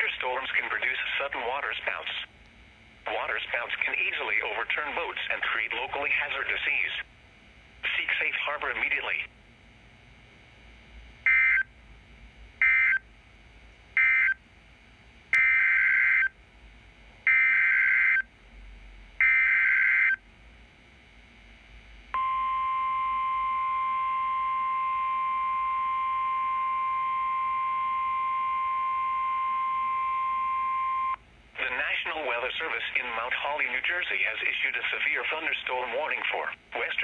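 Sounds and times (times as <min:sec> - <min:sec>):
steady warning alarm tone: 0:11.2 - 0:11.7, 0:12.6 - 0:13.0, 0:14.0 - 0:14.4, 0:15.4 - 0:16.4, 0:17.3 - 0:18.3, 0:19.2 - 0:20.2, 0:22.1 - 0:31.2.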